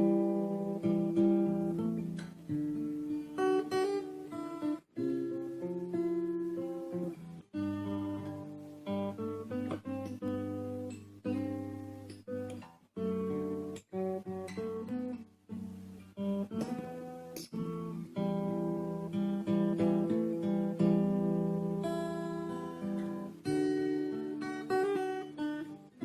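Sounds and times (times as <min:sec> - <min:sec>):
acoustic guitar strumming: 0:00.0 - 0:26.0.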